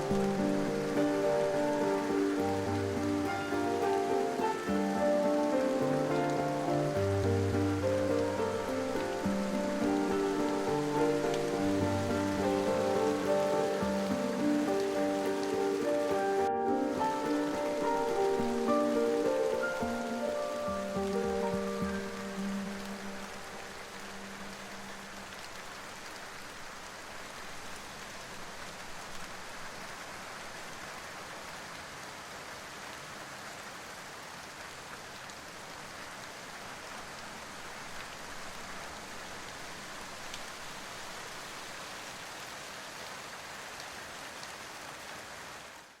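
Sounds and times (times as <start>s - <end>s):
soft background music: 0.0s - 25.5s
steady rain: 0.0s - 46.0s.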